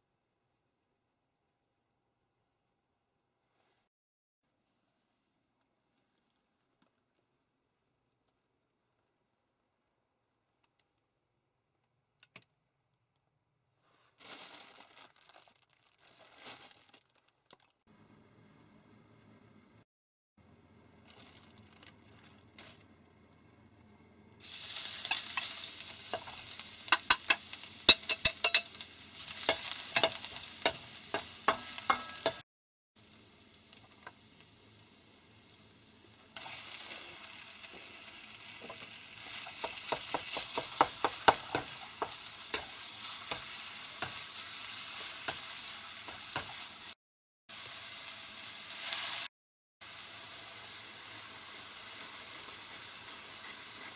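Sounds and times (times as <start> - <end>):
food sizzling in a frying pan: 24.4 - 32.4, 33.0 - 53.9
utensil clicking against pan: 26.1 - 28.8, 29.4 - 32.4, 39.4 - 42.7.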